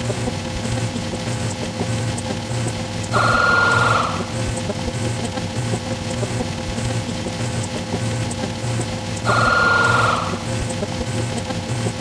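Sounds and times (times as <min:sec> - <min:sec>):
harsh pulsing electronic tone: 0:00.0 - 0:12.0
background music with low beat: 0:04.1 - 0:12.0.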